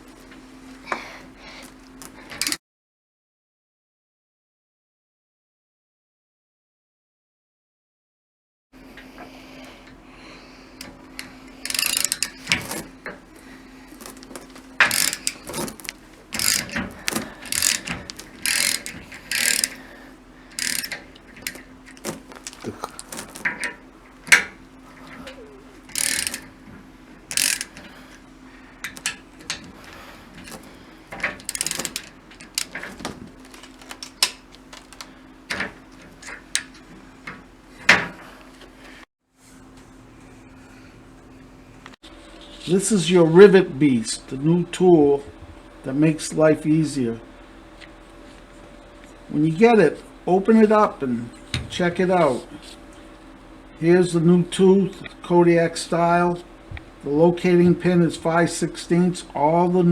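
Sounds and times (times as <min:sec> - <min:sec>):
steady low hum: 0:00.0 - 0:02.6, 0:08.8 - 0:59.9
metal tools clinking: 0:02.3 - 0:02.6, 0:10.8 - 0:13.3, 0:13.9 - 0:36.9.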